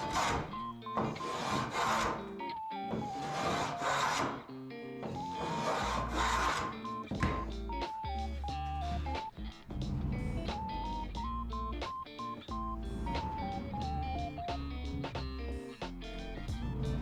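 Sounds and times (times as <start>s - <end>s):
wood rasping strokes: 0.0s - 4.4s, 5.0s - 7.4s
background music with bass: 5.8s - 17.0s.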